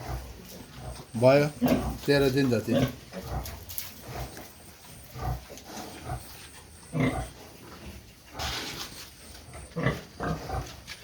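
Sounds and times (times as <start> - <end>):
pigs grunting: 0.0 - 11.0.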